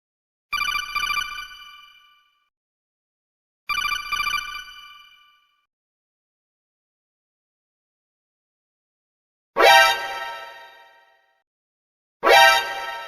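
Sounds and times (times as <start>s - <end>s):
telephone bell ringing: 3.7s - 5.3s.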